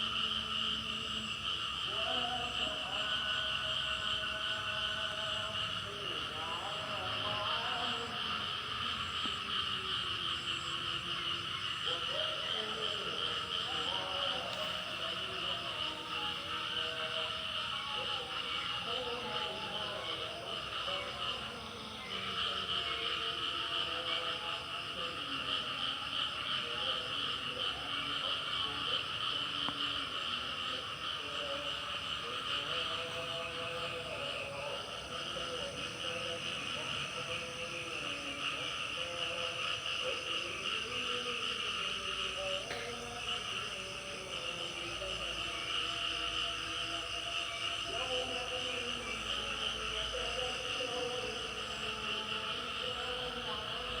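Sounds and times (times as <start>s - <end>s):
frogs and insects chorus: 0.0s - 54.0s.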